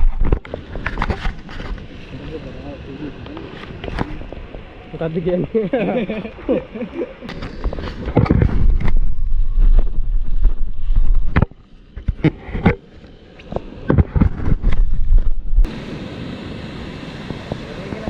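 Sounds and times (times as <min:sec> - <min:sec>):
sharp knocks and scrapes: 0:00.0 - 0:02.0, 0:07.3 - 0:12.8, 0:13.4 - 0:15.7
wind buffeting microphone: 0:07.2 - 0:12.8.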